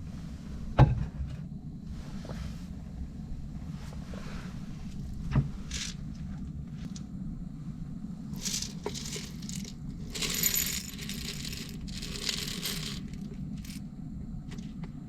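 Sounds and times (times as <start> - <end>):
low background rumble: 0.0 - 15.0
metallic clinking and jingling: 8.4 - 13.8.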